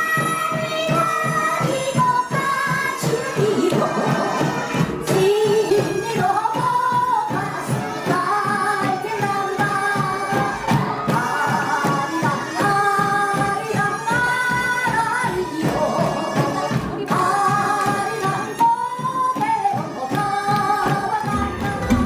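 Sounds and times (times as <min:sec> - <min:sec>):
quick percussion strokes: 0:20.7 - 0:22.0.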